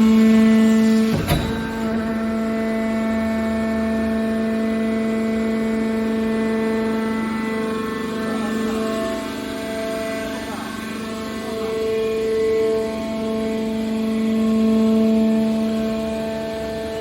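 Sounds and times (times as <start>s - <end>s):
hydraulic pump whining hum: 0.0s - 17.0s
short knock: 1.1s - 2.6s.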